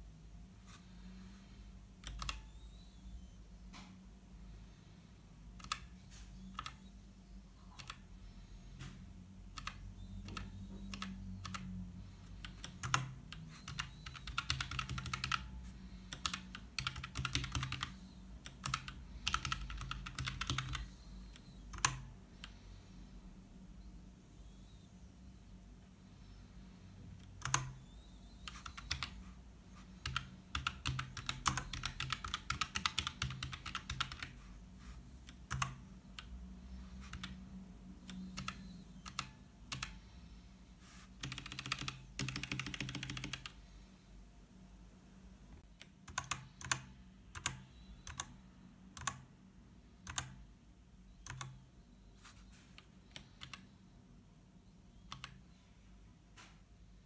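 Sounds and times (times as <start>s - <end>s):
mechanical keyboard typing: 2.0s - 2.5s, 5.6s - 5.9s, 6.6s - 6.8s, 7.7s - 8.0s, 9.5s - 22.6s, 27.2s - 27.8s, 28.4s - 29.3s, 30.0s - 34.5s, 35.2s - 36.3s, 37.0s - 37.4s, 38.0s - 40.0s, 41.2s - 43.6s, 46.1s - 48.3s, 49.0s - 49.3s, 50.0s - 50.4s, 51.2s - 51.6s, 52.8s - 53.6s.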